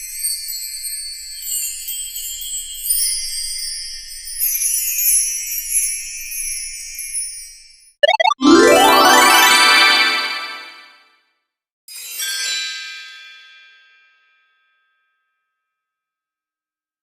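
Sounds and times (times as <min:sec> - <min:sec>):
rising chirps: 0:08.0 - 0:10.8
upward-sweeping glide: 0:08.0 - 0:10.8.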